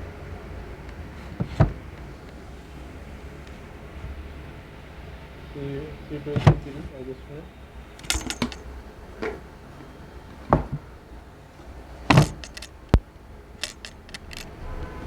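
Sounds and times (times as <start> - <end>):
neck joints clicking: 0.8 - 4.2, 7.9 - 9.4, 11.6 - 15.0.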